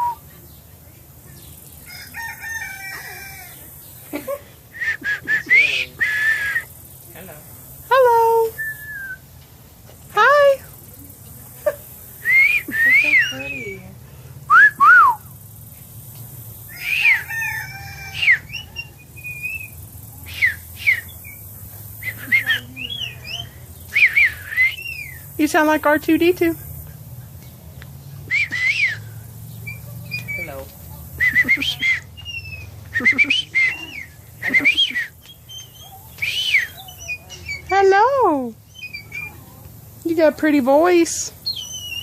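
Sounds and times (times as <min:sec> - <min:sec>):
bird whistling and chirping: 0:08.5 - 0:09.2, 0:12.2 - 0:13.8, 0:14.5 - 0:15.3, 0:16.7 - 0:17.4, 0:18.1 - 0:25.3, 0:28.3 - 0:30.6, 0:31.2 - 0:39.5, 0:41.4 - 0:42.0.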